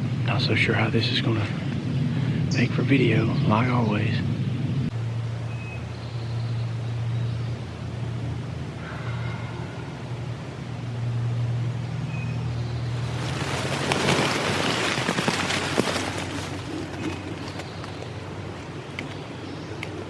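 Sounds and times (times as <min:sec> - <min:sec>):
low engine hum: 0:00.0 - 0:20.0
rustling crackling noise: 0:12.9 - 0:20.0.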